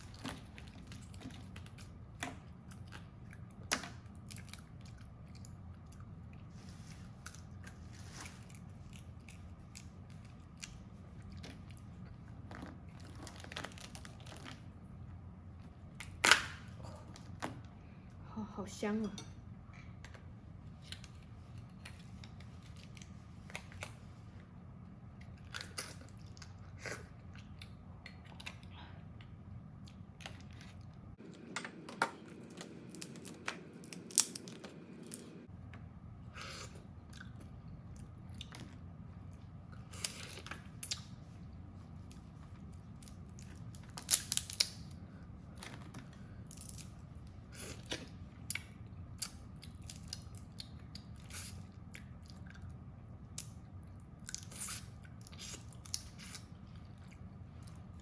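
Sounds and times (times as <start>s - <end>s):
crab shell cracking: 32.6s - 35.3s, 43.8s - 44.9s
chewing: 45.5s - 58.0s.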